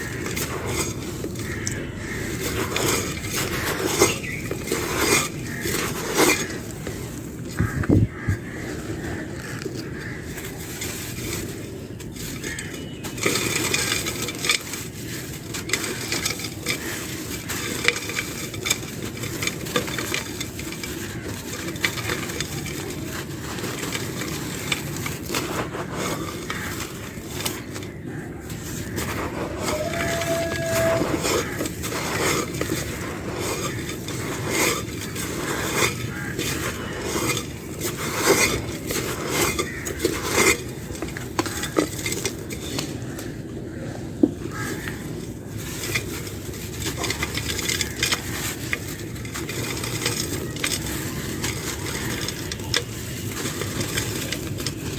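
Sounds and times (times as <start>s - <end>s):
dry clay crumbling and crunching: 0.0s - 54.9s
hard pieces clinking together: 10.6s - 43.0s, 44.6s - 54.9s.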